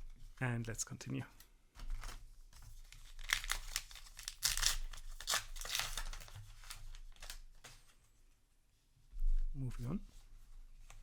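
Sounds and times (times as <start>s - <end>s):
foil wrapper crinkling and tearing: 2.8s - 7.7s.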